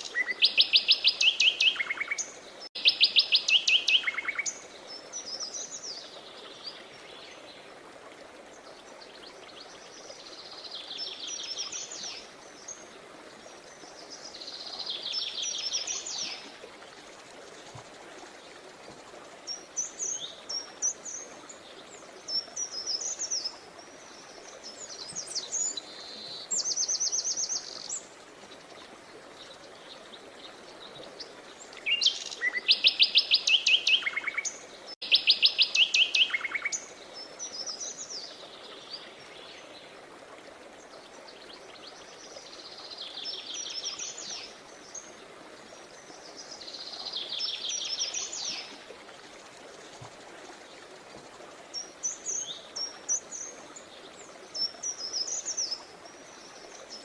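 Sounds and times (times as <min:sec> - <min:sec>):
songbirds singing: 0:00.0 - 0:07.8, 0:08.6 - 0:40.0
flowing water: 0:00.0 - 0:57.0.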